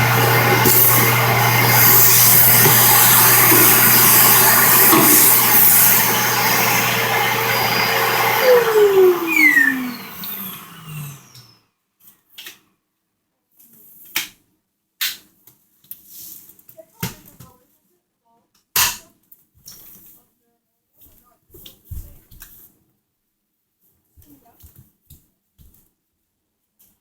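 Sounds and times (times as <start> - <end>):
motor whine spinning down: 0.0 - 11.6
vacuum cleaner running: 0.0 - 11.6.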